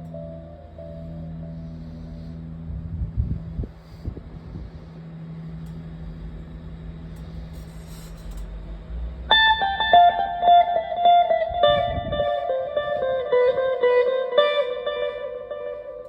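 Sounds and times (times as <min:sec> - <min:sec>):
electric guitar picked notes: 0:00.0 - 0:03.7, 0:09.3 - 0:16.0
amp hum: 0:00.0 - 0:16.0.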